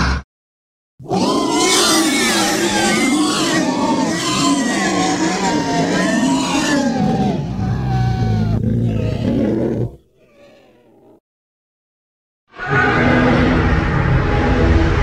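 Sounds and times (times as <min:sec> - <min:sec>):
monster roar: 0:01.0 - 0:11.2, 0:12.6 - 0:15.0
deep rumble: 0:13.0 - 0:15.0.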